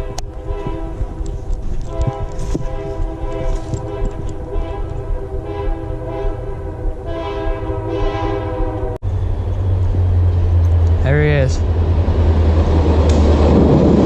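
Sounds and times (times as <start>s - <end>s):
locomotive air horn chord: 0.0s - 1.2s, 1.8s - 9.0s
train rumbling: 0.0s - 14.0s.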